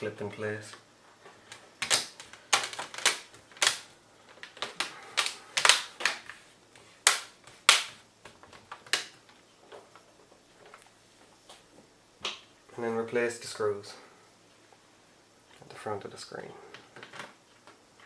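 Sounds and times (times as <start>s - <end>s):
plastic clips snapping into place: 1.5s - 6.3s.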